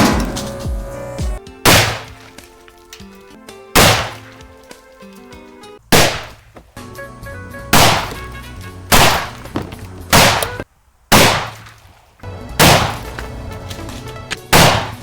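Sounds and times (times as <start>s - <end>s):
background music: 0.0s - 10.6s, 12.2s - 15.0s
shotgun shots: 1.6s - 2.6s, 3.8s - 4.6s, 5.9s - 6.5s, 7.7s - 11.8s, 12.6s - 13.3s, 14.5s - 15.0s.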